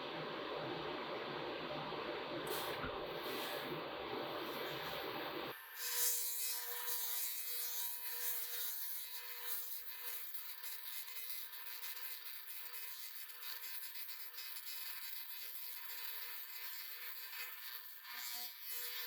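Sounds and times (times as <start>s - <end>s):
faint steady hum: 0.0s - 5.6s.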